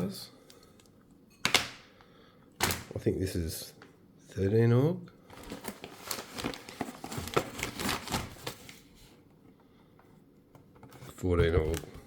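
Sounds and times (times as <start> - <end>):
packaging crinkling and rustling: 5.2 - 9.1.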